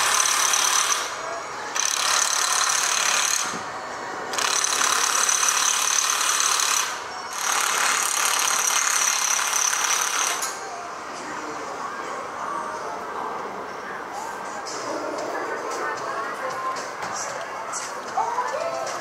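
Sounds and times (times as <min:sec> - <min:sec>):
impact wrench running: 0:00.0 - 0:03.7, 0:04.3 - 0:10.6.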